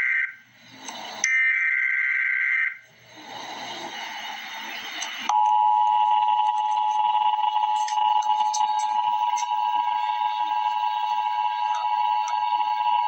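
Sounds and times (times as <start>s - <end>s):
screeching data tones: 3.6s - 13.0s.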